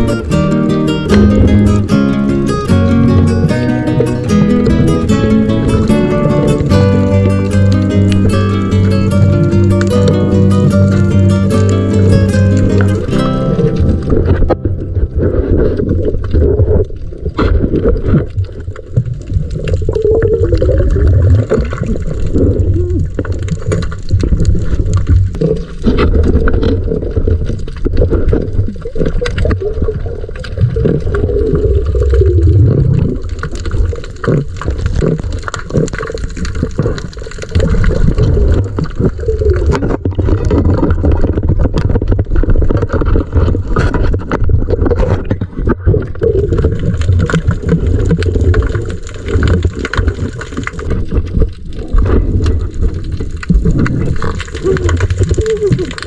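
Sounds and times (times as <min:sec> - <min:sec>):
heavy low underwater rumble: 0:00.0 - 0:19.4, 0:30.2 - 0:35.3
muffled water sloshing and gurgling: 0:00.0 - 0:56.0.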